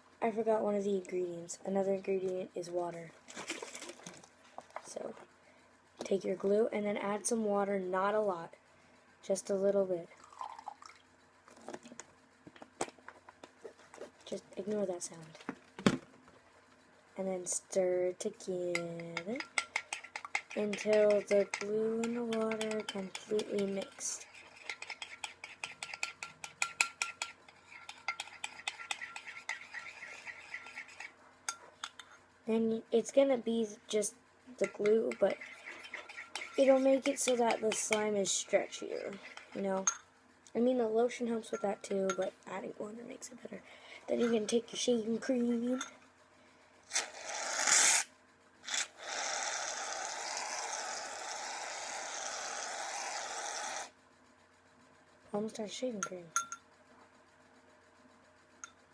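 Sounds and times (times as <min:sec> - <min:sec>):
spoon clinking and scraping bowl: 0:18.7 - 0:32.2, 0:34.6 - 0:40.0, 0:41.4 - 0:42.3, 0:44.2 - 0:44.6, 0:56.0 - 0:56.6.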